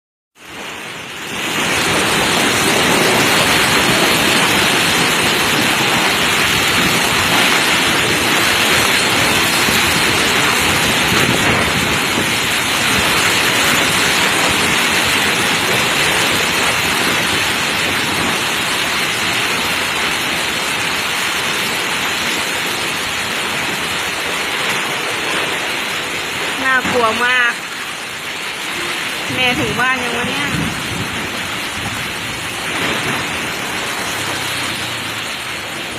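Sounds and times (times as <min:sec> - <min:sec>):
very heavy rain pouring: 0:00.4 - 0:35.9.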